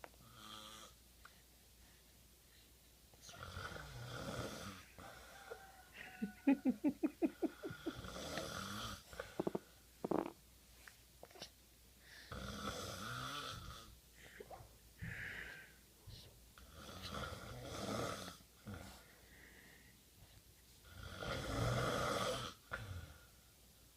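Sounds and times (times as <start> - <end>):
man snoring: 3.4 - 4.9, 7.6 - 10.3, 12.3 - 13.9, 16.7 - 18.8, 20.9 - 23.2.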